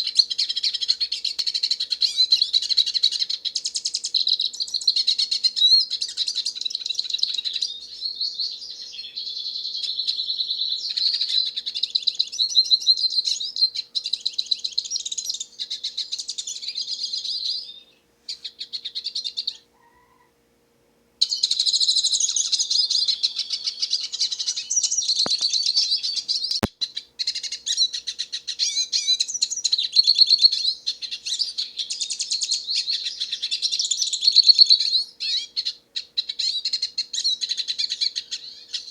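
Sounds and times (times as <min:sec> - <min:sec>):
bird twittering song: 0:00.0 - 0:19.7, 0:21.2 - 0:38.9
faint clicks: 0:25.2 - 0:25.6, 0:26.4 - 0:26.7.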